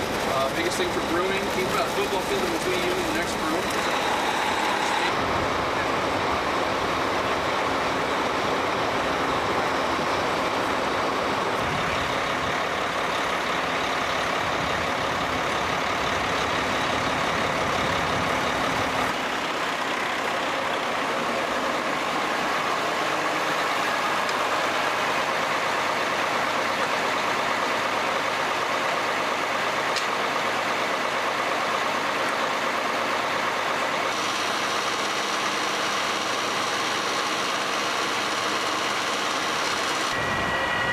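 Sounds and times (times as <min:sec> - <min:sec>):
blower and broom noise: 0:00.0 - 0:12.2, 0:31.9 - 0:40.9
heavy vehicle engines rumbling: 0:00.0 - 0:40.9.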